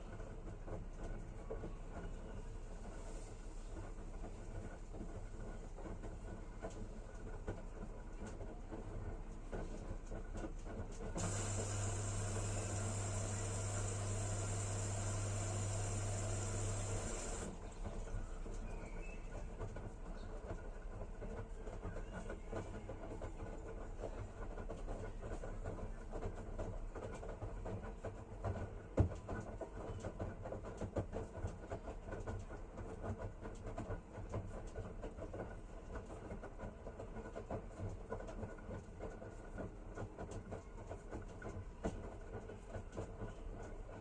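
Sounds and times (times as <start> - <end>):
washing machine drum humming: 10.7 - 18.4.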